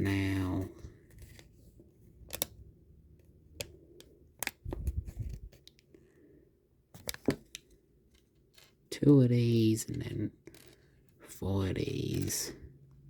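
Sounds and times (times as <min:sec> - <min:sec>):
plastic pieces clicking: 0:02.2 - 0:02.5.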